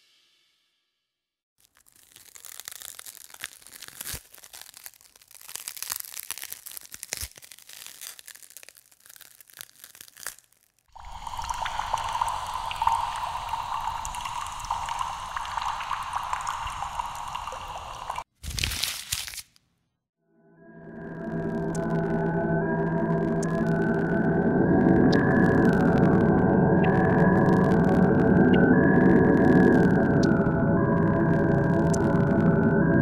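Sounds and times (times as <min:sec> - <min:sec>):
irregular crackling and crunching: 0:01.6 - 0:11.0, 0:18.1 - 0:19.7
steady hissing rush: 0:11.0 - 0:18.2.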